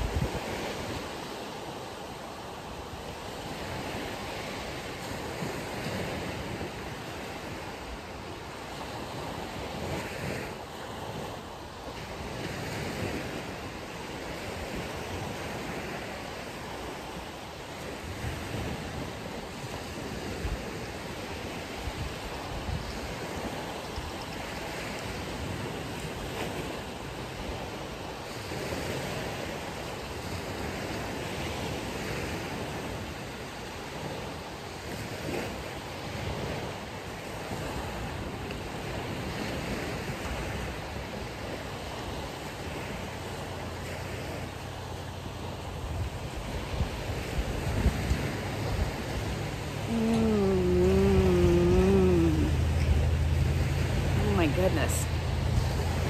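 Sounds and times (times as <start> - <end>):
wind buffeting the microphone: 0.0 - 1.8, 17.8 - 44.6, 45.2 - 56.0
ocean surf on a beach: 0.0 - 56.0.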